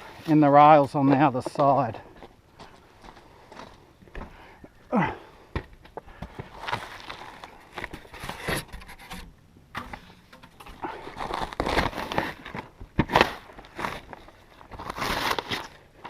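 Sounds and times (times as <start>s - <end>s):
hardware scraping and knocking: 7.8s - 10.8s.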